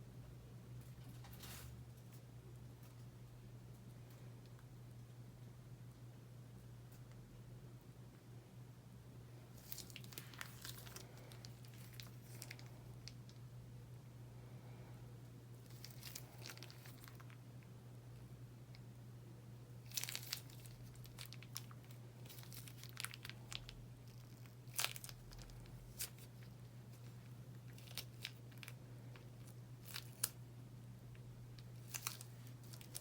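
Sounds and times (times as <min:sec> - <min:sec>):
slime crackling and popping: 0:09.6 - 0:13.3, 0:15.6 - 0:17.4, 0:19.8 - 0:30.4, 0:31.2 - 0:33.0.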